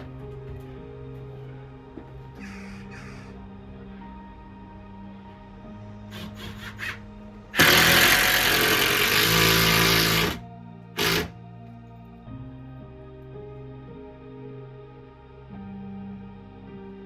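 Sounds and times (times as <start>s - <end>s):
power drill driving screws: 6.1s - 7.0s, 7.6s - 10.4s, 11.0s - 11.3s.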